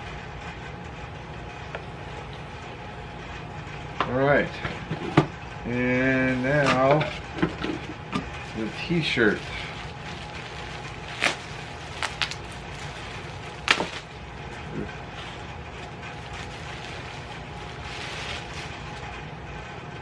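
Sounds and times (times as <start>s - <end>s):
steady background hum: 0.0s - 20.0s
packaging crackling: 7.7s - 19.2s.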